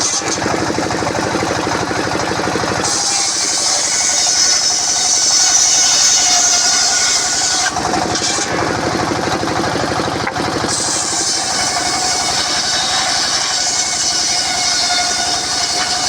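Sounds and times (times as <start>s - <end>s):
engine low pulsing: 0.0s - 2.9s, 7.7s - 12.4s
circular saw high whine: 2.6s - 16.0s.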